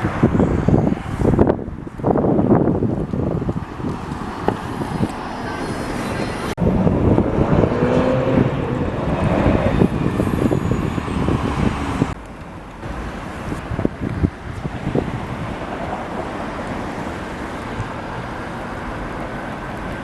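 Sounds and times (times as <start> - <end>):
wind noise on microphone: 0.0 - 20.0.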